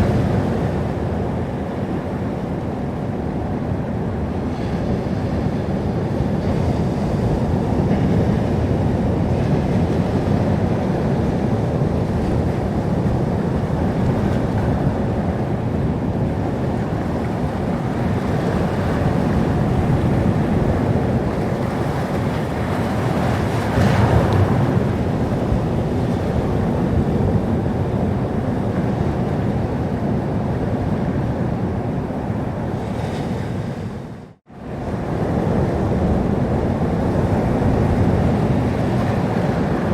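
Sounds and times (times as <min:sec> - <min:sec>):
waves washing onto shore: 0:00.0 - 0:39.9
wave breaking: 0:16.4 - 0:28.5.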